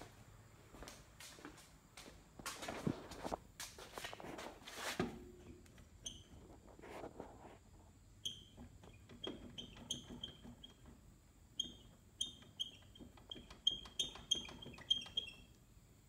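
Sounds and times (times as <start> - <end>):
wheel bearing squeaking: 5.4 - 7.2, 8.0 - 15.5.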